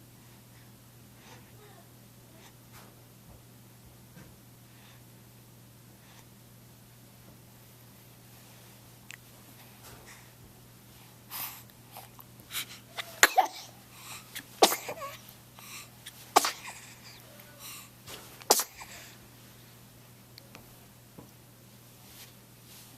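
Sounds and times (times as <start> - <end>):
little girl sneezing: 12.9 - 13.8, 14.6 - 15.2, 16.4 - 16.9, 18.5 - 19.2.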